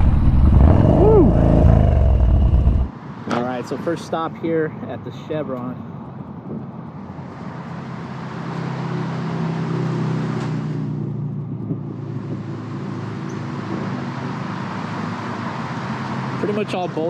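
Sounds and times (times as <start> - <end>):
motorcycle engine at low speed: 0.0 - 2.9.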